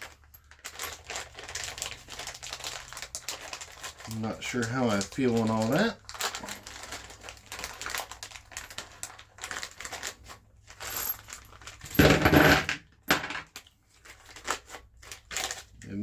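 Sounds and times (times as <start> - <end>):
metal hardware clinking: 10.8 - 13.4.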